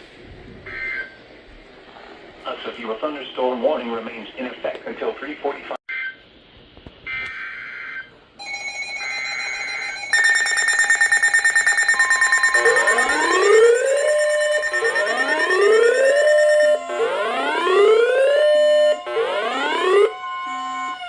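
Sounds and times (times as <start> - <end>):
warbling data-tone bursts: 10.1 - 20.1
pulsing electronic alert tone: 10.2 - 21.0.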